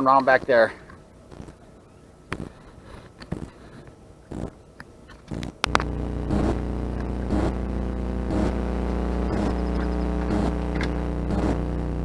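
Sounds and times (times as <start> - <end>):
boat motor running: 5.3 - 12.0.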